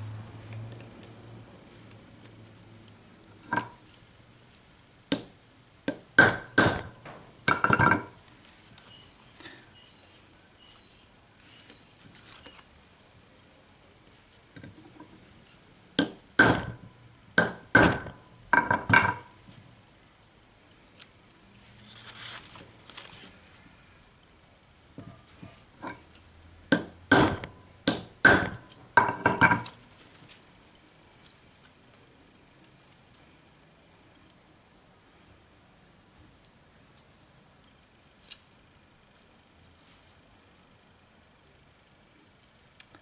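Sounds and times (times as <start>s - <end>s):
hammer tapping metal punch: 5.1s - 8.1s, 16.0s - 19.3s, 26.7s - 29.7s.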